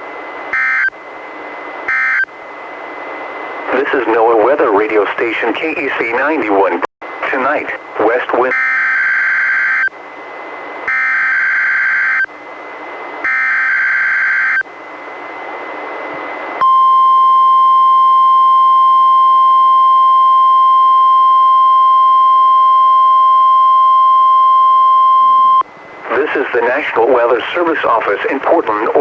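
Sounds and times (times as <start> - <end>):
steady warning alarm tone: 0.2 - 2.4, 8.0 - 10.0, 10.8 - 12.3, 13.2 - 14.8, 16.6 - 28.2
radio hiss: 3.6 - 8.5, 26.0 - 29.0.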